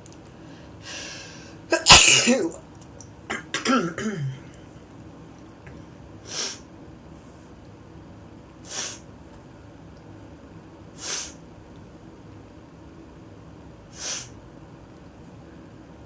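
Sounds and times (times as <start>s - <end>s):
person sniffling: 0.8s - 2.6s.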